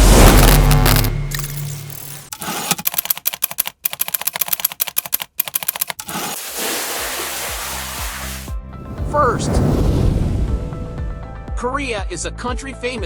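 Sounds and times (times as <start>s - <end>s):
sharp clicks: 0.2s - 6.1s
even hiss: 6.4s - 8.5s.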